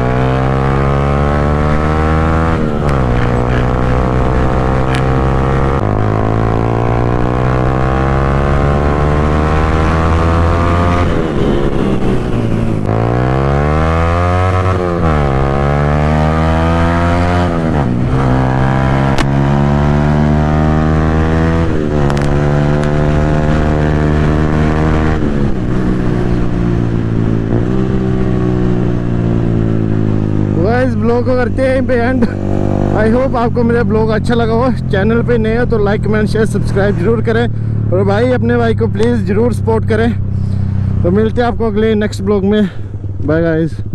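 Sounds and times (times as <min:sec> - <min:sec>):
motorcycle engine accelerating: 0:00.0 - 0:43.9.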